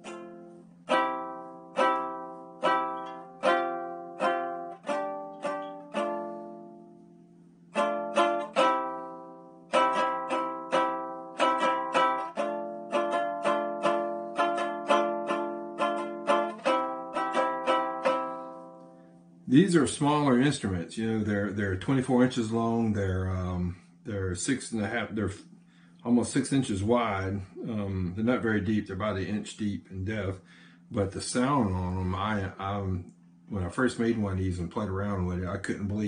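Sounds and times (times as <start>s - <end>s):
lyre strummed: 0.0s - 36.0s.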